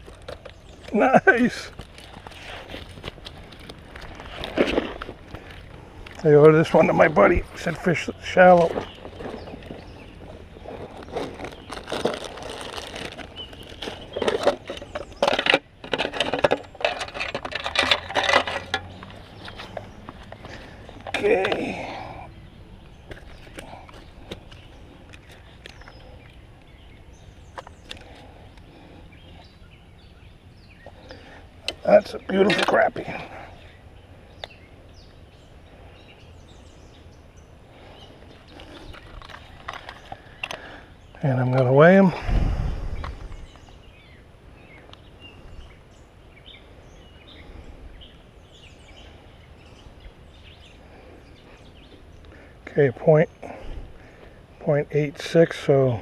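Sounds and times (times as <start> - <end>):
handling noise rustling and knocks: 0.0 - 22.0.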